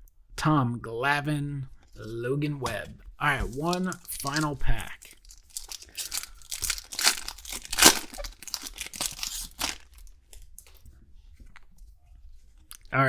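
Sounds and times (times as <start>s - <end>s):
wrapper tearing and crinkling: 3.4s - 10.8s.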